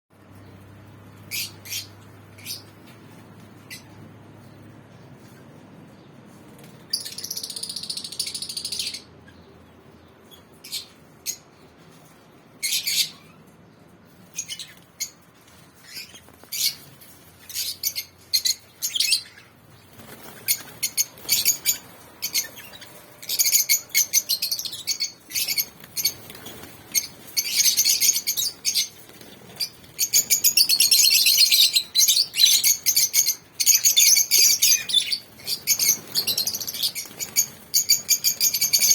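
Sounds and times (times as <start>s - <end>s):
lovebirds chirping: 12.6s - 38.9s.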